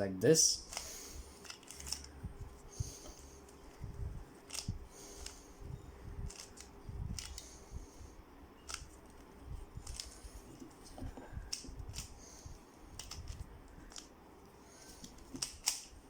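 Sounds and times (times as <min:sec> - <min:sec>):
puzzle cube clicking turns: 0:00.7 - 0:02.2, 0:04.5 - 0:05.4, 0:06.2 - 0:07.5, 0:08.7 - 0:10.3, 0:11.5 - 0:12.2, 0:13.0 - 0:14.1, 0:15.0 - 0:16.0.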